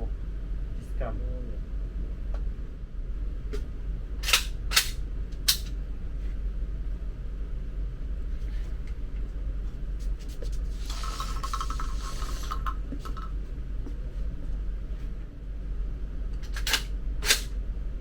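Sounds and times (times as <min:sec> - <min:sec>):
rubbing and scraping handling noise: 0:10.0 - 0:13.3.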